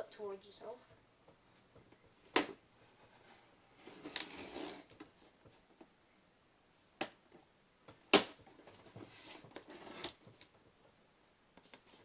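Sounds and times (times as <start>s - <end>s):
blade rasping through tape: 3.8s - 5.0s, 9.3s - 10.2s.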